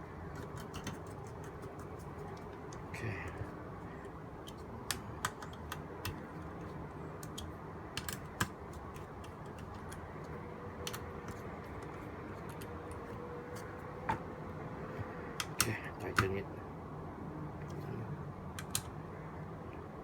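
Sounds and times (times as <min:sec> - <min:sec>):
steady background hum: 0:00.0 - 0:20.0
screwdriver clicks and taps: 0:07.2 - 0:10.0, 0:10.8 - 0:14.3, 0:15.0 - 0:16.3.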